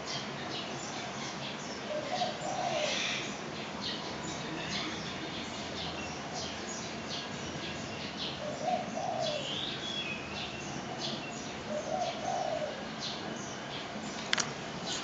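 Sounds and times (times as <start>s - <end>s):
small birds chirping: 0.0s - 15.0s
steady background noise: 0.0s - 15.0s
dove cooing: 1.9s - 3.4s, 8.3s - 9.7s, 11.6s - 12.9s.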